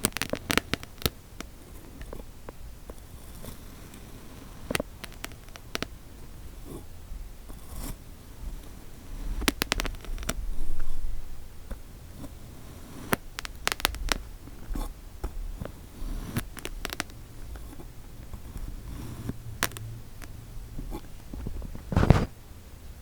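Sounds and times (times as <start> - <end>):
sand crunching and crackling: 0.0 - 6.8, 7.5 - 11.0, 12.1 - 14.9, 15.6 - 22.4
heavy crunching thud: 21.4 - 22.4.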